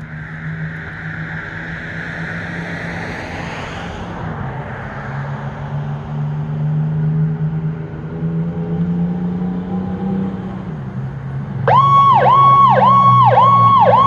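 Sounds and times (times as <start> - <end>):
vehicle engine humming: 0.0 - 3.6, 7.0 - 14.0.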